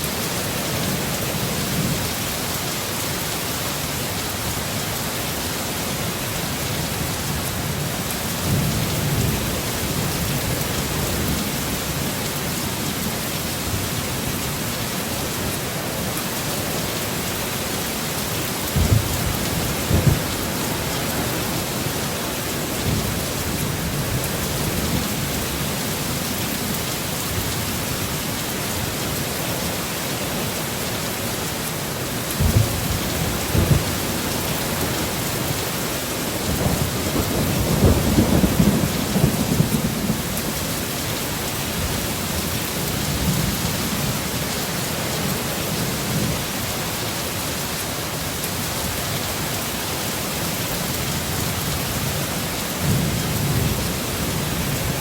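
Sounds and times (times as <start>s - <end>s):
heavy rain hissing: 0.0s - 55.0s
thunder rumbling: 18.6s - 25.7s, 32.4s - 40.6s.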